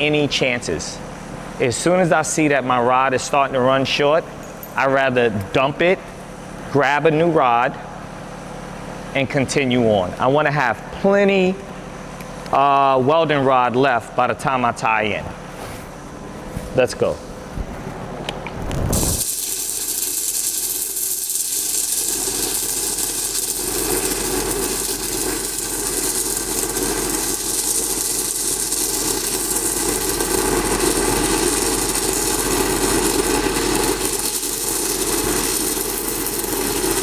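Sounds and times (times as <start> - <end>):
welding arc crackling hiss: 0.0 - 6.6, 18.6 - 37.0.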